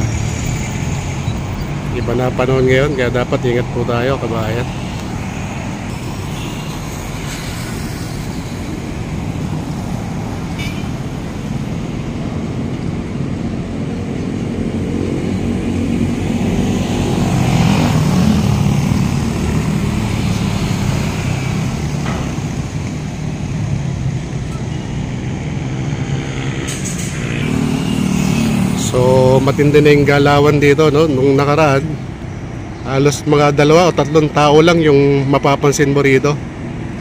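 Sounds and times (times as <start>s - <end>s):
louder vehicle passing: 0.0s - 34.4s
road traffic rumble: 0.0s - 37.0s.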